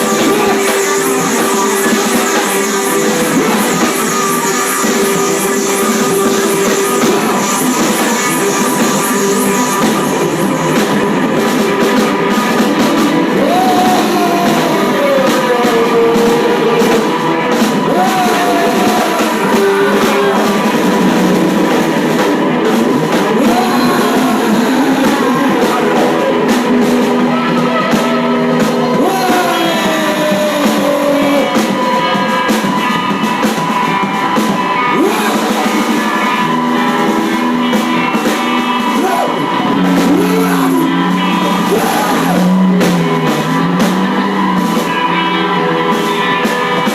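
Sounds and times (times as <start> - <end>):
distorted electric guitar noise: 0.0 - 46.9.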